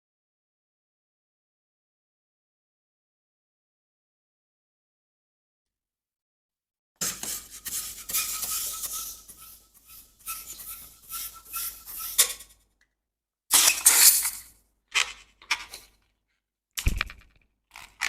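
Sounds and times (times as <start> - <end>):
hands rubbing rubber balloon: 7.0 - 12.3.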